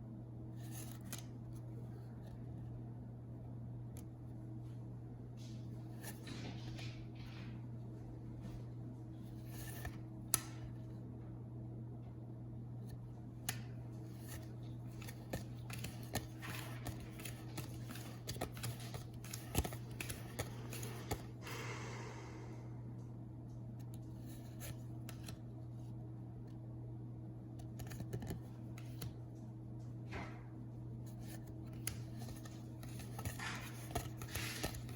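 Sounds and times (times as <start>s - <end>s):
steady low hum: 0.0s - 34.9s
playing cards clicking and snapping: 0.6s - 1.4s, 9.4s - 10.8s, 12.9s - 21.5s, 23.8s - 25.4s, 27.6s - 29.2s, 31.1s - 34.9s
cards rustling: 0.6s - 2.2s, 9.2s - 10.7s, 12.8s - 21.6s, 27.6s - 29.4s, 31.1s - 34.9s.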